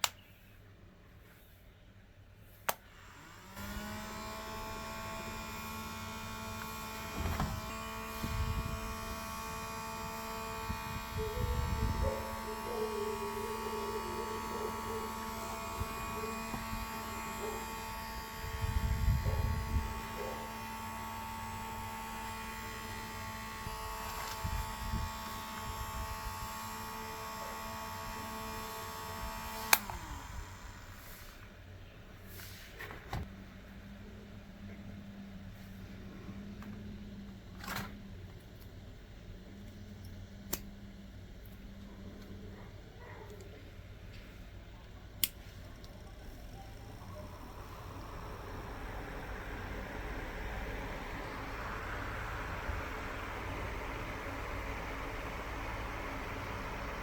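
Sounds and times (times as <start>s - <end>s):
switch click: 0.0s - 0.2s
small fan motor humming whine: 2.2s - 57.0s.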